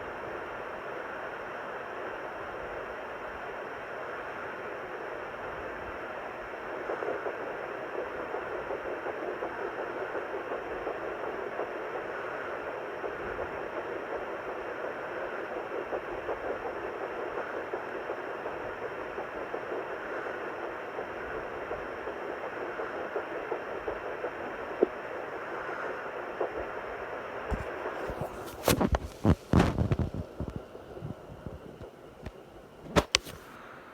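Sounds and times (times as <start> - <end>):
rapid fetal heartbeat pulse: 0.0 - 33.4
fetal doppler static hiss: 0.0 - 33.9
sharp click: 32.9 - 33.5.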